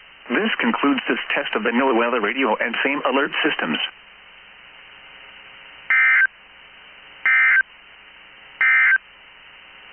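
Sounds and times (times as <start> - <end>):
faint radio hiss: 0.0 - 9.9
digital data tone bursts: 5.9 - 6.3, 7.3 - 7.6, 8.6 - 9.0.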